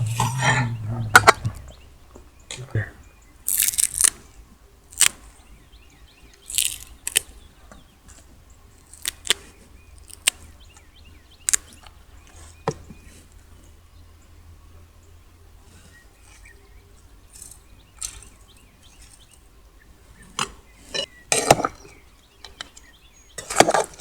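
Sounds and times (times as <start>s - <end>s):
faint bird chirps: 0.0s - 3.5s.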